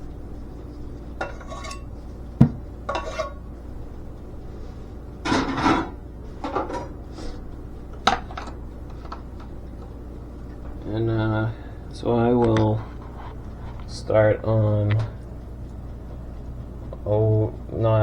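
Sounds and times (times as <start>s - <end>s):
utensil scraping a pan: 0.8s - 1.9s, 2.9s - 3.4s
metal utensils clinking: 1.2s - 1.9s.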